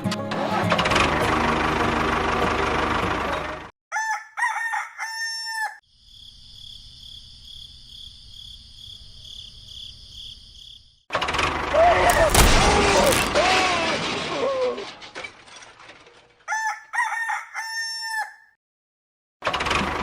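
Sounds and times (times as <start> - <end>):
rooster crowing: 3.9 - 5.8, 16.5 - 18.6.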